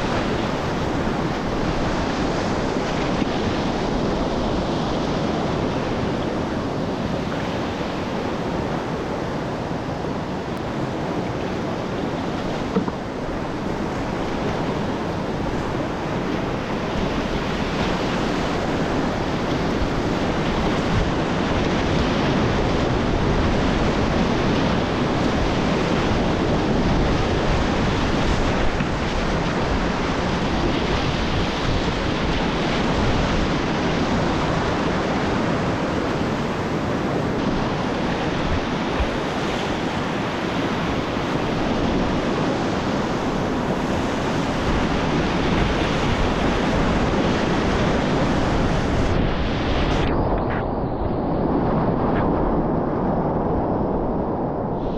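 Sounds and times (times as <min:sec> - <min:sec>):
rushing whitewater rapids: 0:00.0 - 0:50.2.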